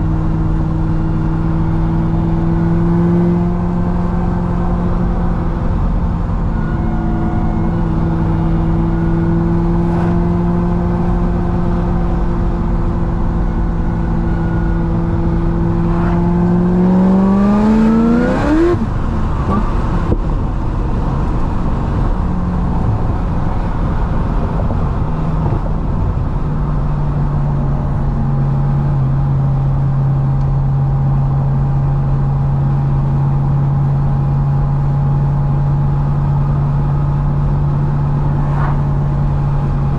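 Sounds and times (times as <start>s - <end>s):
car engine cruising: 0.0s - 39.9s
engine revving with rising pitch: 14.0s - 19.8s.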